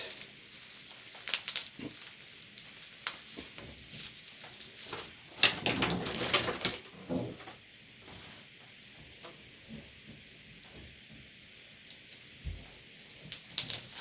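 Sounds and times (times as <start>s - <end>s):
packaging rustling and crunching: 0.0s - 6.9s, 11.9s - 14.0s.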